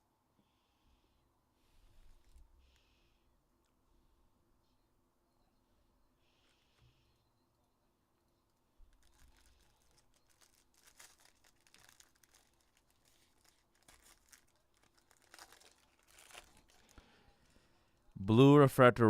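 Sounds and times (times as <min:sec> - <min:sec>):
wrappers crinkling and tearing: 0:08.5 - 0:17.6.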